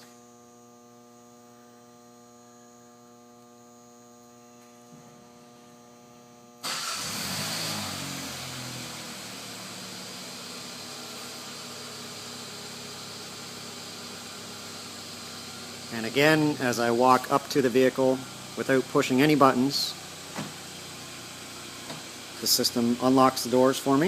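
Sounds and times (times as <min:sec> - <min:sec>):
steady hum: 0:00.0 - 0:06.7, 0:08.0 - 0:24.0
car engine starting and idling: 0:06.6 - 0:24.0.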